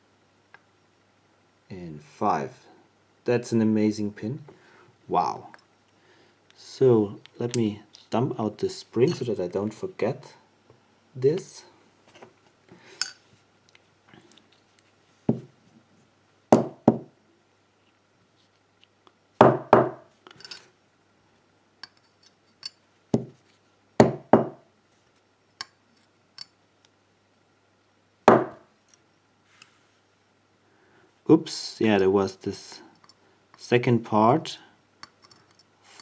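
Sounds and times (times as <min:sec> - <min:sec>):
small metal parts clicking: 0:35.0 - 0:36.0.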